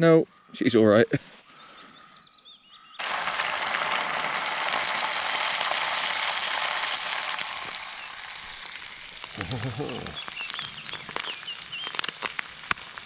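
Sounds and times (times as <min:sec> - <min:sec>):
egg sizzling in a pan: 0:03.0 - 0:13.0.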